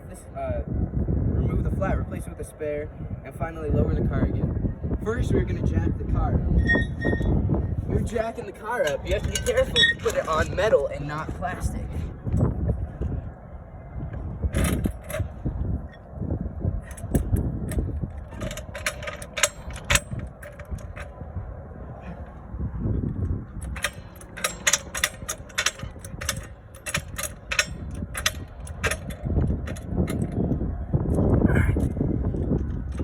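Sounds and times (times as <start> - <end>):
wind on microphone: 0.0 - 33.0
car jack metallic clicks: 16.8 - 21.2, 23.6 - 30.3.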